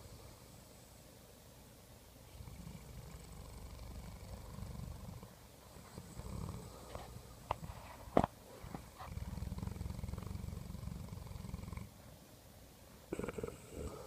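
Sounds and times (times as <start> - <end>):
dog snoring: 2.3 - 7.7, 8.8 - 12.0, 13.1 - 14.0.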